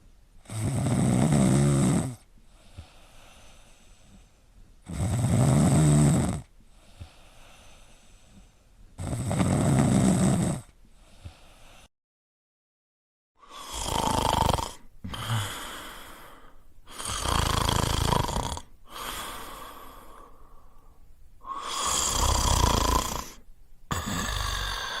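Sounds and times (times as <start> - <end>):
person snoring: 0.4 - 8.4, 9.0 - 11.9, 13.4 - 25.0
soft breath: 2.4 - 4.7, 6.6 - 8.9, 10.8 - 11.9, 14.8 - 17.3, 18.8 - 22.4, 23.2 - 25.0.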